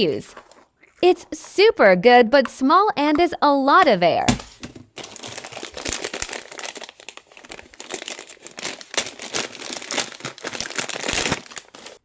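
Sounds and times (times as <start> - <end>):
thin plastic crinkling: 4.4 - 12.0.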